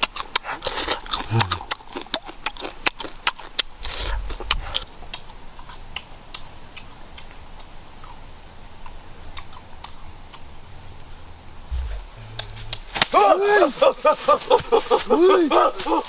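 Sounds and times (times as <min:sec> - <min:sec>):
crunching crisp food: 0:00.0 - 0:10.6.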